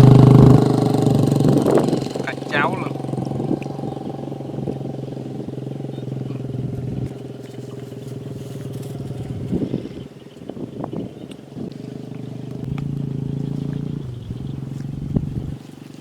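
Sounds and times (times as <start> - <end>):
small engine running: 0.0 - 10.0, 11.5 - 16.0
person speaking: 2.2 - 3.0.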